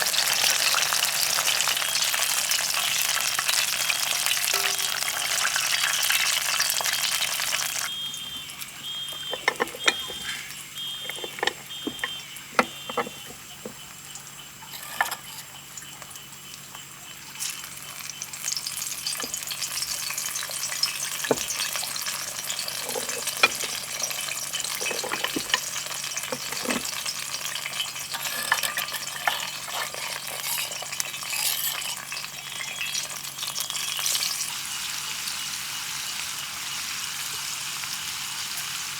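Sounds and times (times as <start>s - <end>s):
food sizzling in hot fat: 0.0s - 38.9s.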